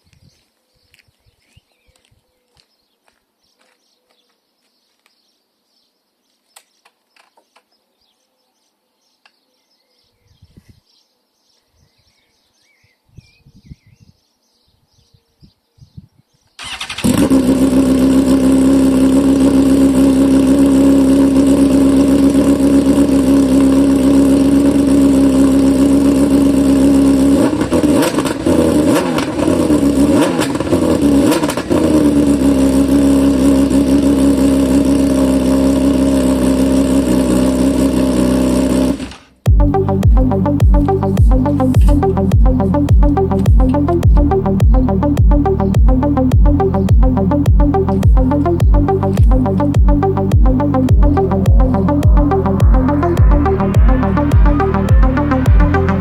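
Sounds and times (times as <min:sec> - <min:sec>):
motorcycle throttle blips: 0:16.6 - 0:33.7, 0:38.7 - 0:56.0
motorcycle engine idling: 0:16.6 - 0:38.9, 0:39.5 - 0:56.0.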